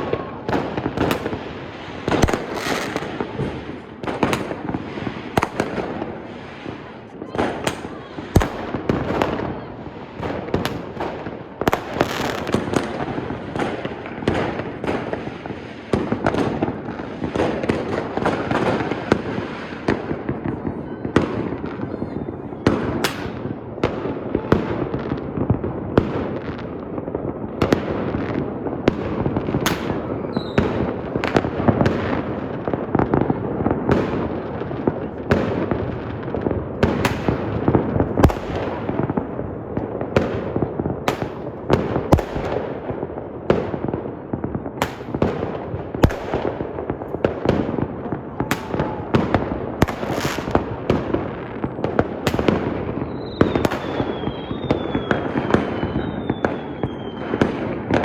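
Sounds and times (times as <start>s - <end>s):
fireworks crackling: 0.0s - 58.0s
fireworks cracks and bangs: 0.0s - 58.0s.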